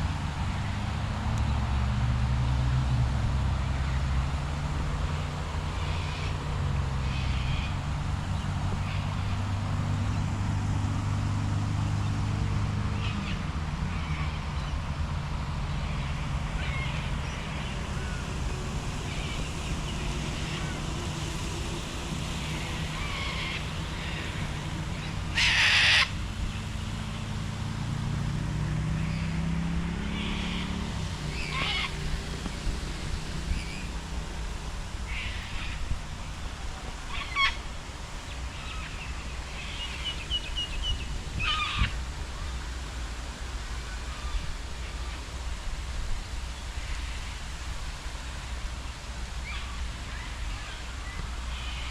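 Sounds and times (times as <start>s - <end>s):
passing vehicle engine hum: 0.0s - 51.9s
rain hiss: 0.0s - 51.9s
birds calling: 3.6s - 27.3s, 28.7s - 45.5s, 48.8s - 51.9s.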